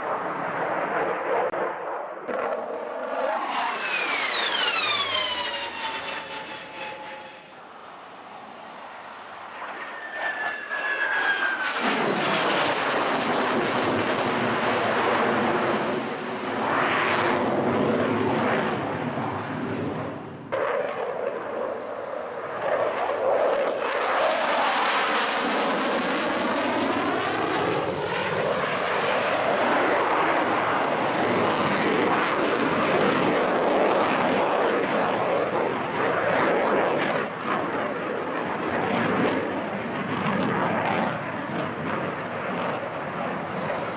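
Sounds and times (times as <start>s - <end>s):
jet flyby roar: 0.0s - 43.9s.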